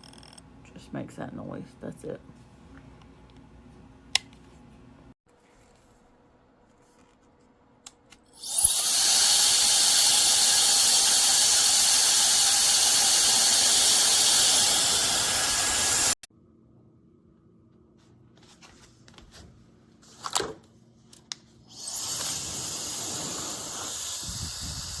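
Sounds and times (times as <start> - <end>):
hair dryer blowing: 8.4 - 16.3, 21.7 - 25.0.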